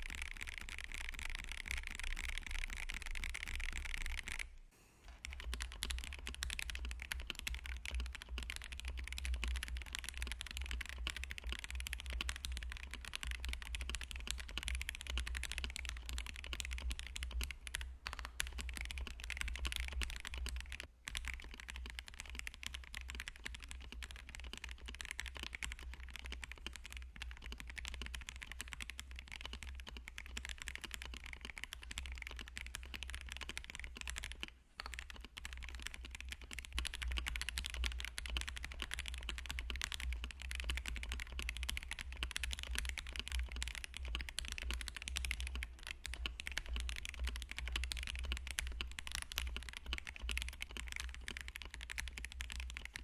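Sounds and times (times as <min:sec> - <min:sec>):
fast typing on mechanical keyboard: 0:00.0 - 0:04.5, 0:05.1 - 0:53.0.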